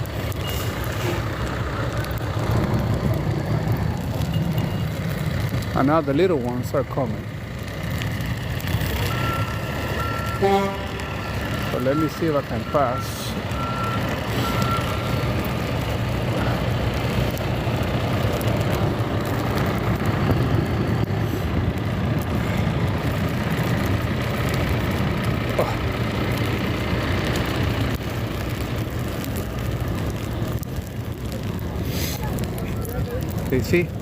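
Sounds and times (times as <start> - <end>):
truck engines running: 0.0 - 34.0
truck reversing beeper: 0.3 - 2.2, 4.2 - 5.0, 8.9 - 15.6.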